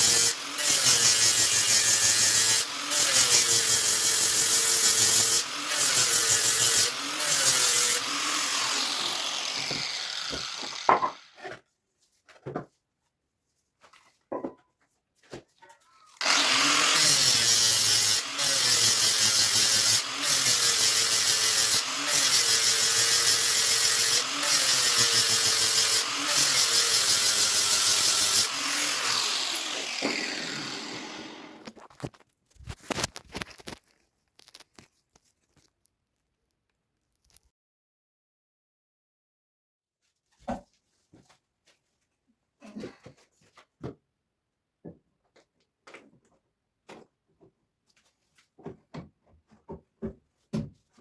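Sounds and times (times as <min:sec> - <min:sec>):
power tool motor running: 0:00.0 - 0:11.4, 0:16.2 - 0:31.7.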